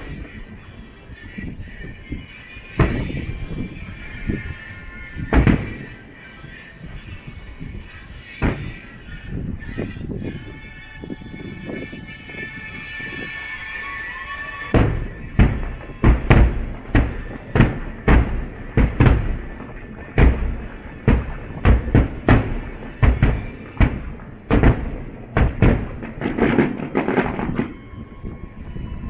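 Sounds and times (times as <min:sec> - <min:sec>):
distant fireworks booming: 0:02.7 - 0:07.6, 0:08.2 - 0:10.0, 0:14.4 - 0:28.6.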